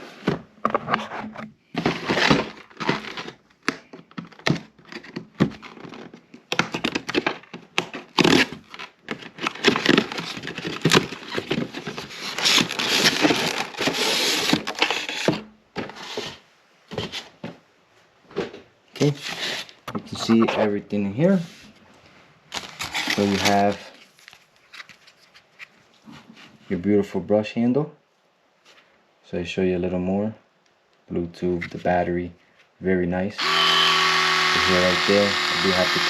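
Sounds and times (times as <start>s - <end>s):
packaging rustling: 1.7s - 17.2s, 22.5s - 25.7s
packaging tearing and crackling: 4.2s - 15.3s, 22.5s - 24.9s.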